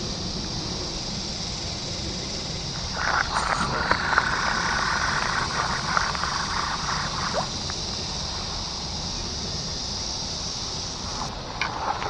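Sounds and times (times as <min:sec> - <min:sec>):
high-pitched hiss: 0:00.0 - 0:12.0
creek water running: 0:01.6 - 0:12.0
faint clicks: 0:03.0 - 0:08.1.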